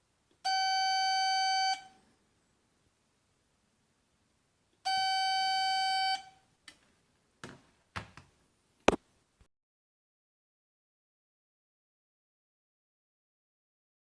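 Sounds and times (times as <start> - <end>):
buzzer tone: 0.4 - 2.0, 4.8 - 6.4.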